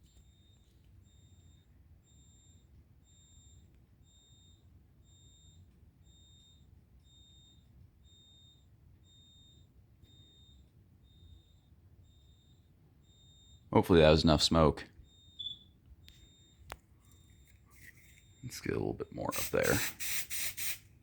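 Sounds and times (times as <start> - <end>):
high-pitched electronic beeping: 15.3 - 15.7.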